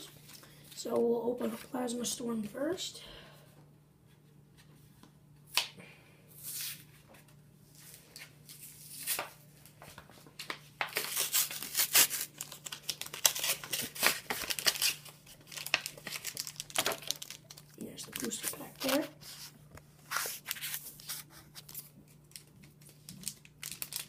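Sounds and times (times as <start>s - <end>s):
packaging crinkling and tearing: 10.3s - 24.0s.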